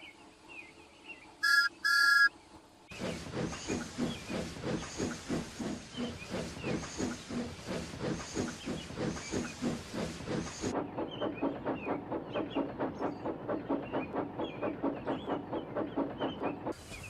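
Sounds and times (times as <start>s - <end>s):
steam locomotive chuffing: 2.9s - 17.0s
steam hissing: 3.0s - 10.7s.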